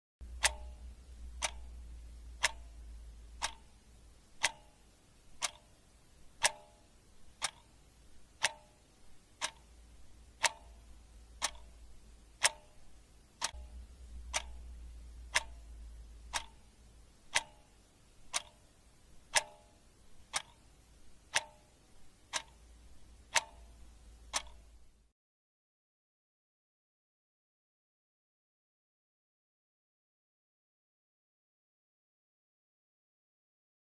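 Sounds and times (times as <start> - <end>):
clock ticking: 0.2 - 25.1
faint low hum: 0.2 - 25.1.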